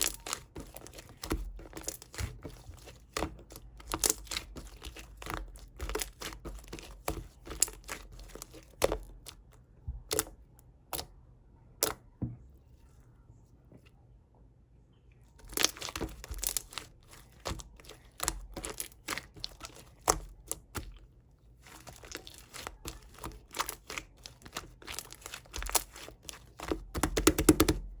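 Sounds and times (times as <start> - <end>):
plastic crinkling and tearing: 0.0 - 9.4, 15.4 - 21.0, 21.7 - 27.0.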